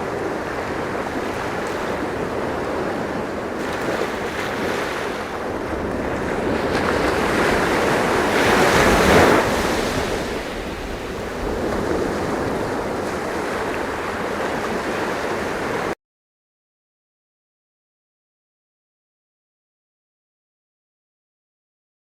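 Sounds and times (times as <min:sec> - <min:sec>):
sea waves washing in: 0:00.0 - 0:16.0.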